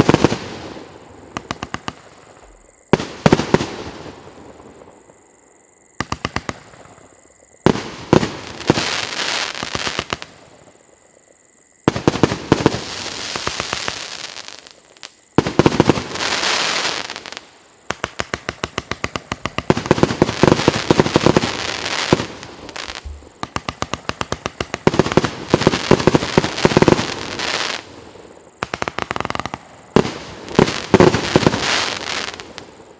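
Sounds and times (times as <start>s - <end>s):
firework bangs with crackling: 0.0s - 2.3s, 2.9s - 4.2s, 6.0s - 7.0s, 11.9s - 14.7s, 15.4s - 27.9s, 28.6s - 32.8s.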